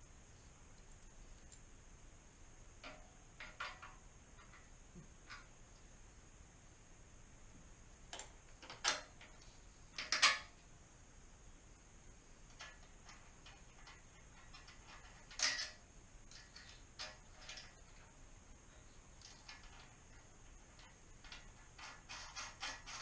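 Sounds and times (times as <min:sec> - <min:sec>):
metal parts clinking: 0:10.0 - 0:10.5, 0:12.5 - 0:18.1, 0:19.2 - 0:23.0.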